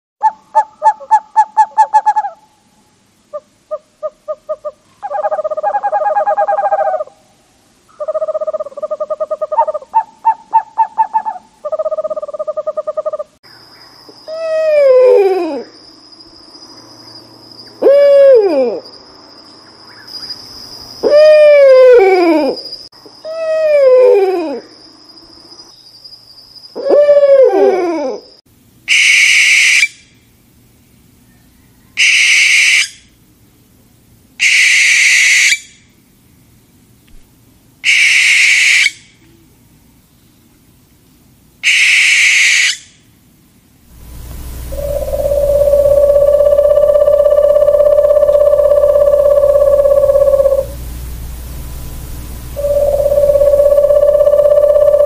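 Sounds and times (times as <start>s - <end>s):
high insect-like tone: 11.7s - 27.4s, 43.8s - 55.0s
owl calls dropping in pitch: 28.9s - 30.0s, 32.0s - 33.0s, 34.4s - 35.8s, 37.8s - 39.1s, 41.6s - 42.9s, 44.0s - 55.0s
owl hissing screeches: 28.9s - 30.0s, 32.0s - 33.0s, 34.4s - 35.7s, 37.8s - 39.0s, 41.6s - 42.9s, 44.0s - 55.0s
steady electronic tone: 43.9s - 55.0s.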